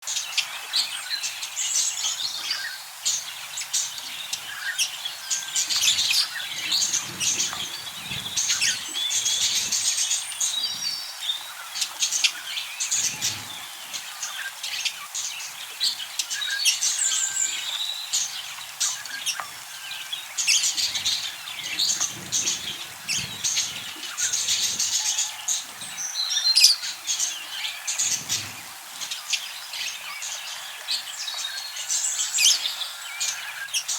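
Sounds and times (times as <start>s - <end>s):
budgerigars chirping: 0.0s - 33.9s.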